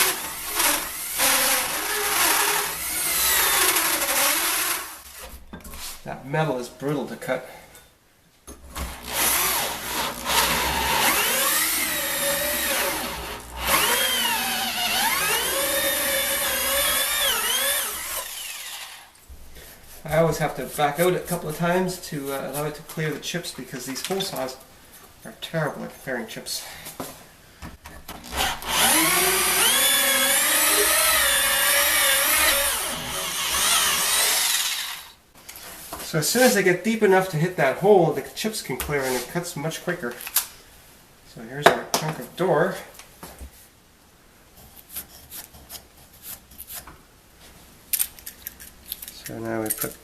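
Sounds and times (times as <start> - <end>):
hole saw grinding into metal: 28.2 - 35.1.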